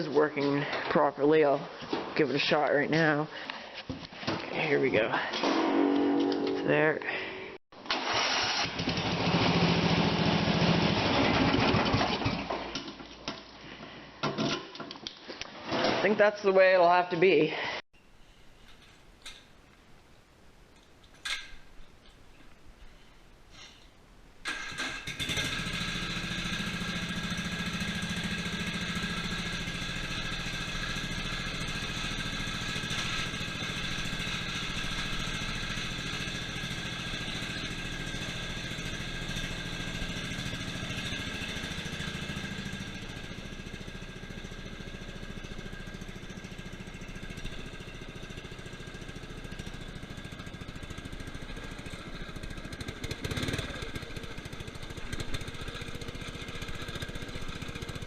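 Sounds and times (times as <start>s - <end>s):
lawn tractor engine running: 7.8s - 13.4s, 24.4s - 58.0s.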